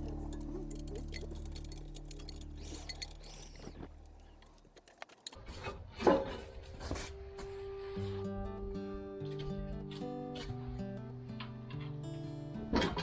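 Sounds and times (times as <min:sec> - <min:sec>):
background music: 0:00.0 - 0:04.5, 0:07.0 - 0:13.0
light metallic clinking: 0:00.0 - 0:05.4.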